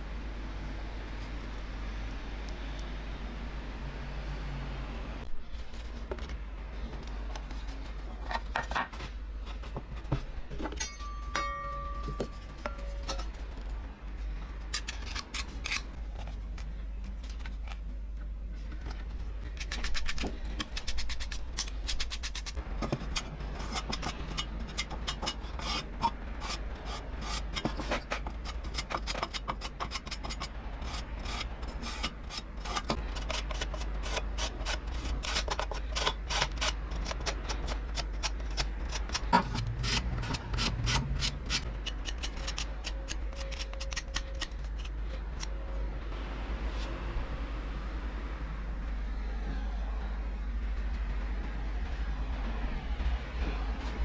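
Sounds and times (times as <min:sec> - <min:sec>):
steady low hum: 0:00.0 - 0:54.0
hand rubbing and scraping on metal: 0:18.6 - 0:45.8.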